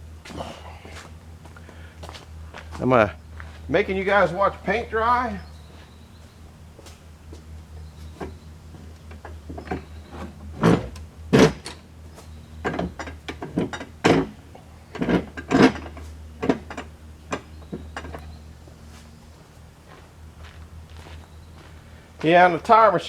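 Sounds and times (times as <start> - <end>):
steady low hum: 0.0 - 23.0
metal clanks and scrapes: 8.1 - 19.0.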